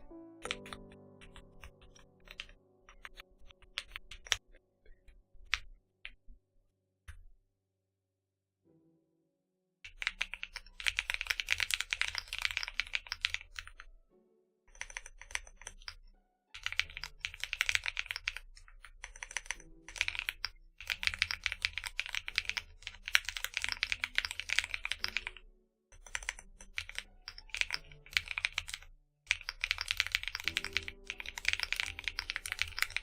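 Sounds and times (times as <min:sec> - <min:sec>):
mechanical keyboard key clacks: 0:00.4 - 0:04.4, 0:09.9 - 0:13.8, 0:16.6 - 0:25.4, 0:26.0 - 0:33.0.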